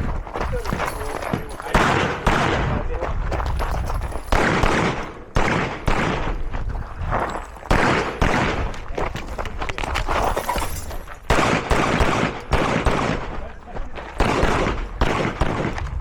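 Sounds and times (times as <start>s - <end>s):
pistol shots with echo: 1.2s - 2.9s, 4.2s - 6.5s, 7.7s - 8.9s, 11.2s - 13.5s, 14.1s - 15.9s.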